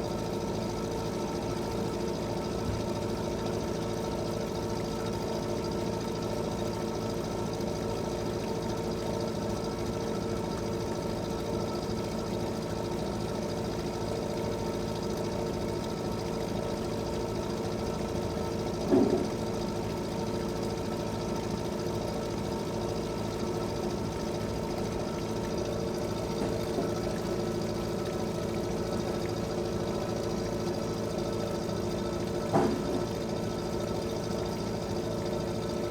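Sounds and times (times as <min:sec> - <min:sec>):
boat engine chugging: 0:15.7 - 0:35.9.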